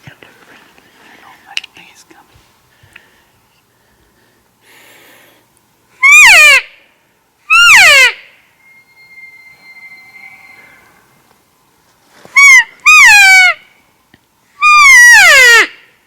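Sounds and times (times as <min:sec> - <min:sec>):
elk calling: 0:07.5 - 0:11.4
faint high whistle: 0:07.8 - 0:11.7.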